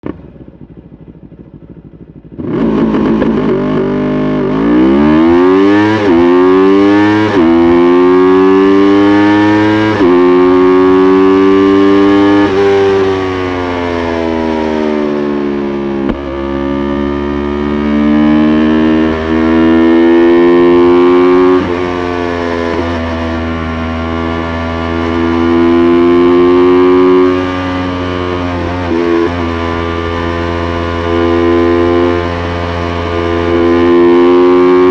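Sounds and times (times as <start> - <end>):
gear changes: 0.0 - 6.4
motorcycle engine accelerating: 0.0 - 34.9.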